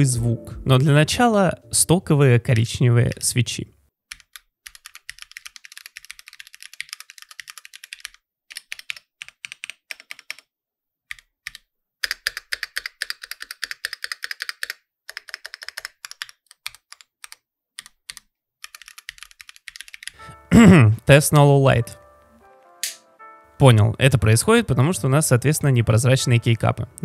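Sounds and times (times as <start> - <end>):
mechanical keyboard typing: 4.1 - 10.5, 11.1 - 20.2.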